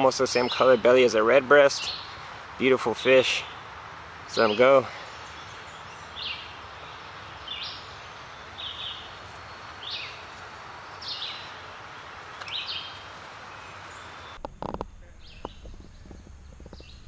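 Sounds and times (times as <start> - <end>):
bird chirping: 0.0 - 17.0
outdoor background hiss: 0.0 - 17.0.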